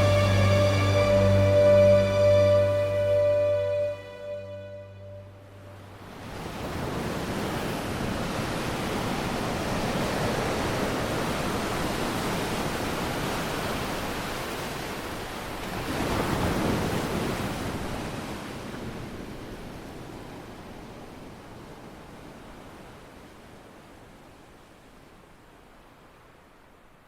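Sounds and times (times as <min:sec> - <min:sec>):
sea surf rushing: 0:00.0 - 0:21.3.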